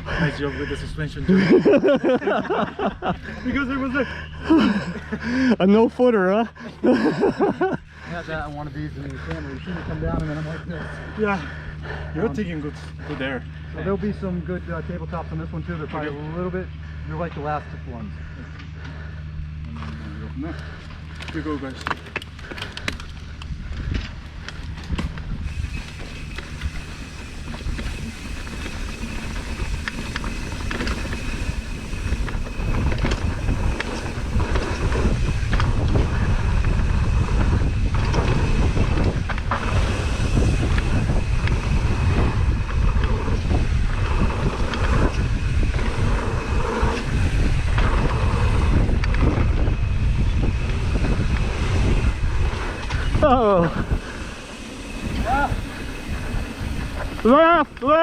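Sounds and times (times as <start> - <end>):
bike knocks and rattles: 20.8 - 46.2
wind rushing over microphone: 22.2 - 58.0
thin high whine: 25.4 - 58.0.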